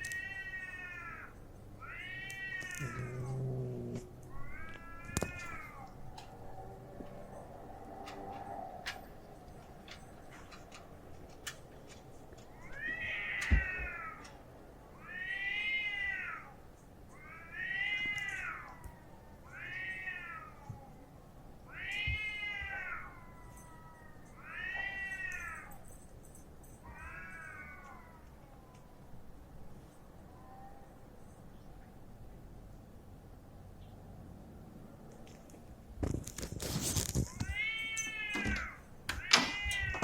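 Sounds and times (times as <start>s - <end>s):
cats yowling: 0.0s - 9.2s, 12.5s - 25.8s, 26.8s - 29.1s, 36.6s - 40.0s.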